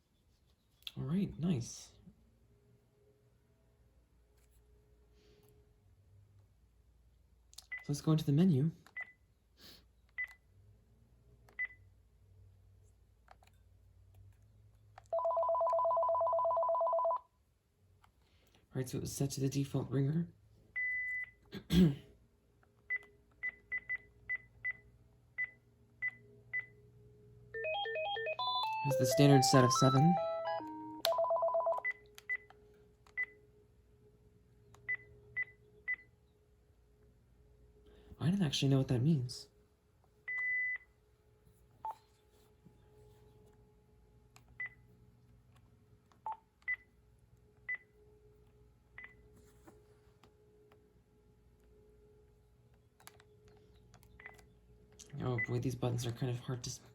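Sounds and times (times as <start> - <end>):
electronic ringtone melody: 15.2 - 17.2, 27.6 - 31.9
cordless phone key beeps: 29.9 - 32.5.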